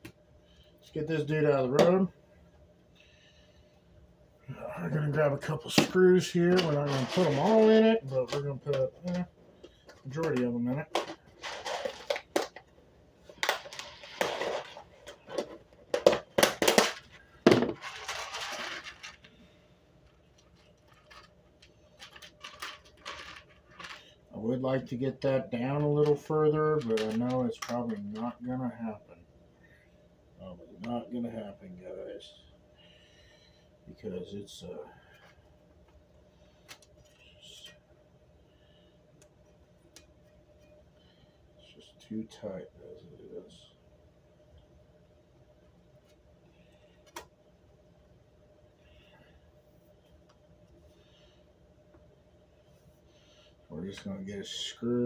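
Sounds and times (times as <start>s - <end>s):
faint room hum: 0.0s - 55.0s
rustling and scraping: 5.1s - 28.5s
handling rustle: 5.9s - 12.6s.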